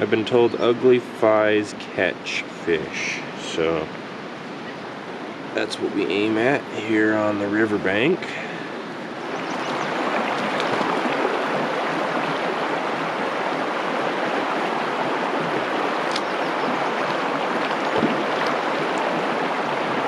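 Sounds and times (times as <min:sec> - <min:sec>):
mountain stream rushing: 0:00.0 - 0:20.0.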